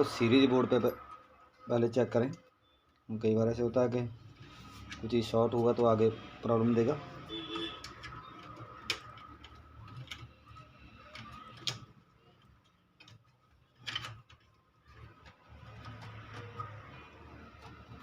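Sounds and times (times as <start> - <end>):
light clicks and taps of tools: 7.4 - 18.0.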